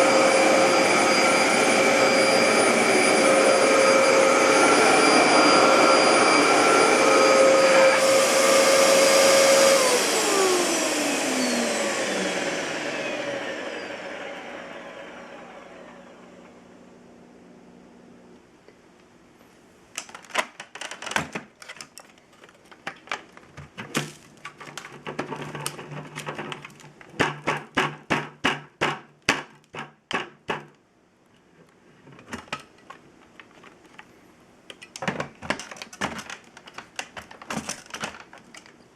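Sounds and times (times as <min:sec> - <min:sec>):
vacuum parts rattling: 0:20.0 - 0:28.0, 0:34.7 - 0:38.8.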